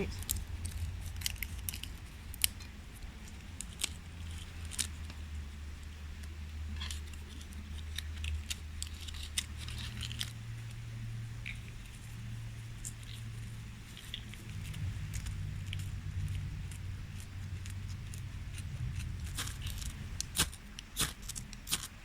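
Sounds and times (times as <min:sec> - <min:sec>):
kindling fire crackling: 0:00.0 - 0:22.0
steady low hum: 0:00.0 - 0:22.0
fire snaps and pops: 0:14.0 - 0:22.0.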